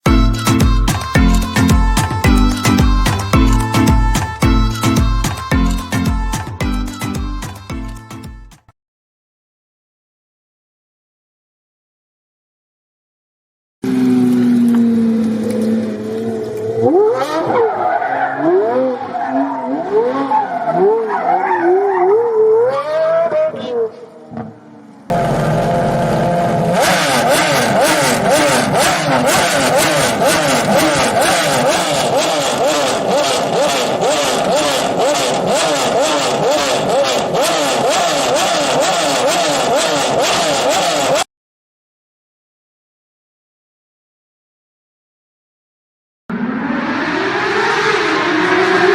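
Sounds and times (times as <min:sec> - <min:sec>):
sports car engine revving: 0:25.1 - 0:41.2, 0:46.3 - 0:48.9.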